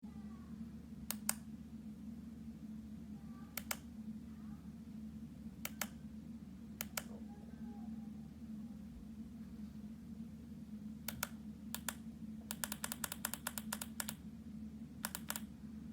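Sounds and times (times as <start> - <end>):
steady low hum: 0.0 - 15.9
sharp double clicks: 11.1 - 14.2, 15.0 - 15.5.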